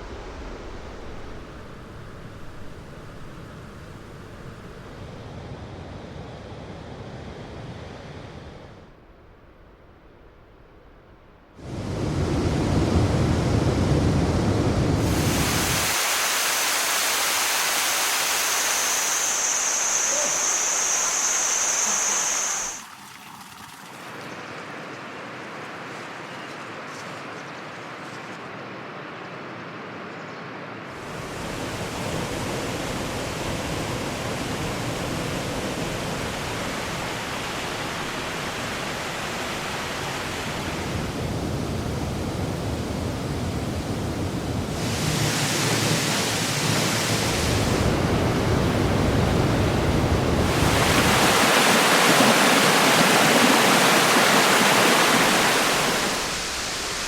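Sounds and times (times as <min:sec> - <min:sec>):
waterfall rushing: 0:11.6 - 0:22.8, 0:31.0 - 0:41.5, 0:44.6 - 0:57.0.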